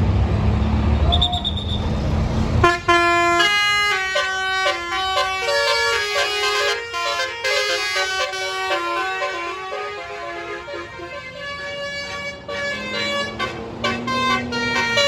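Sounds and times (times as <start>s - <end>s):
bus engine rumble: 0.0s - 15.0s
horn playing a melody: 2.6s - 15.0s.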